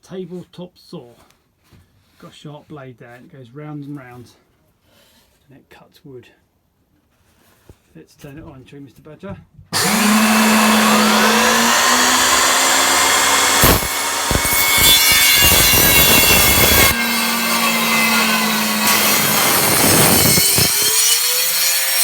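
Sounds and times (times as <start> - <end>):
table saw cutting wood: 9.8 - 22.0.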